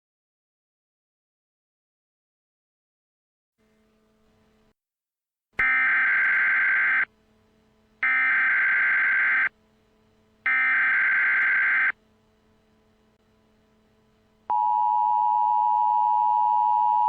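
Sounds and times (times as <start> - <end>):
faint low hum: 5.6 - 17.0
digital data tone bursts: 8.0 - 9.5, 10.5 - 12.0.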